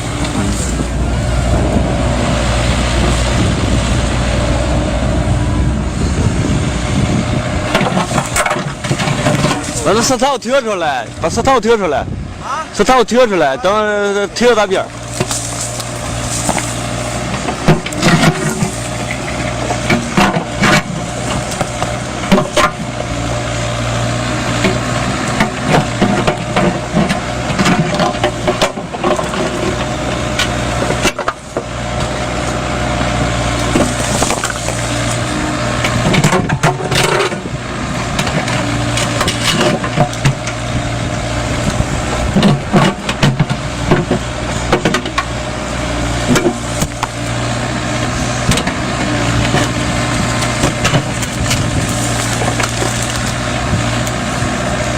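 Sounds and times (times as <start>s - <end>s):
excavator diesel engine running: 0.0s - 54.9s
stones knocking against steel bucket: 33.6s - 35.2s.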